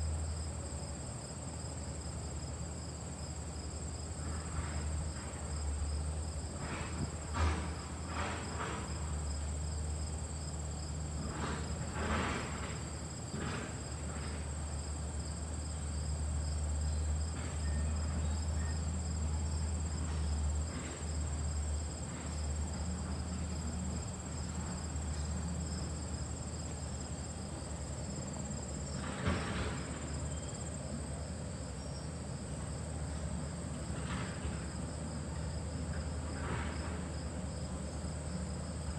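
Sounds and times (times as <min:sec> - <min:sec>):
insects trilling: 0:00.0 - 0:38.9.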